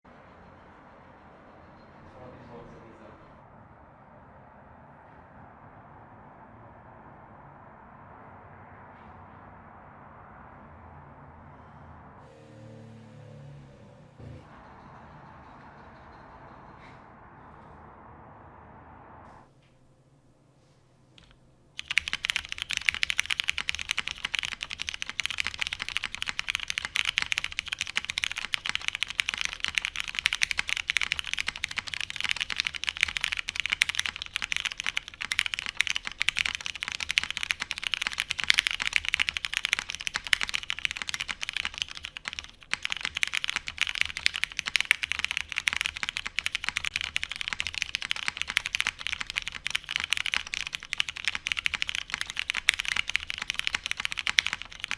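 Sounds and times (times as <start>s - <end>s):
mechanical keyboard typing: 21.2s - 54.9s.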